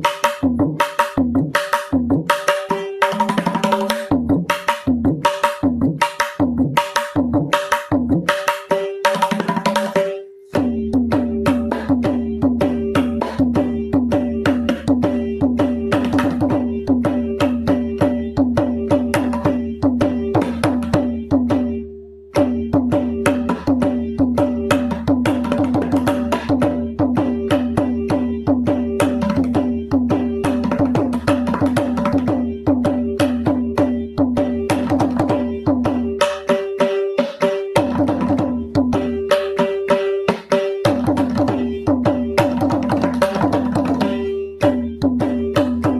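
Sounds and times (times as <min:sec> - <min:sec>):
hand drum fast rolls: 0:22.4 - 0:36.8, 0:37.4 - 0:45.9.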